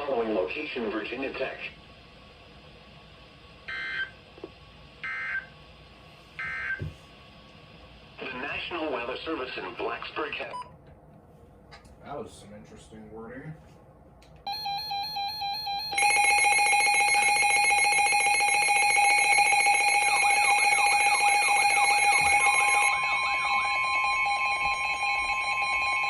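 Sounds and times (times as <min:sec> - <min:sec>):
steady electronic alarm tone: 0:03.7 - 0:04.1, 0:05.0 - 0:05.5, 0:06.4 - 0:06.9, 0:14.5 - 0:26.0
second steady tone: 0:14.5 - 0:26.0
warbling electronic sweep: 0:19.2 - 0:26.0.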